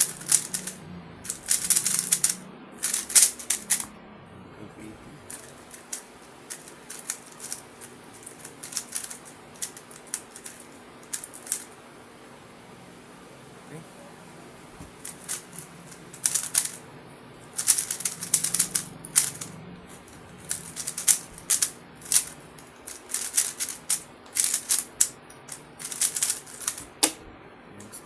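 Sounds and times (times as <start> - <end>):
plastic puzzle cube clacking: 0.0 - 3.9, 5.3 - 11.7, 15.0 - 16.8, 17.5 - 19.5, 20.4 - 27.1.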